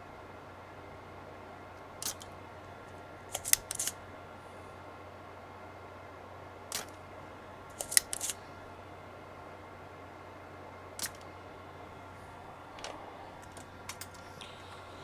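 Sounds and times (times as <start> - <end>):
faint hum: 0.0 - 15.0
desoldering pump clicks: 2.0 - 2.4, 3.3 - 4.0, 6.7 - 7.0, 7.7 - 8.4, 11.0 - 11.3.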